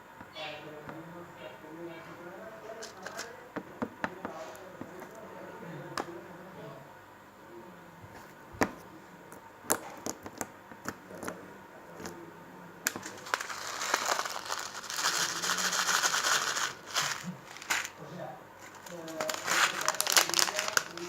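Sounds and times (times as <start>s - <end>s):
slime popping and crackling: 12.9s - 17.9s, 18.8s - 21.0s.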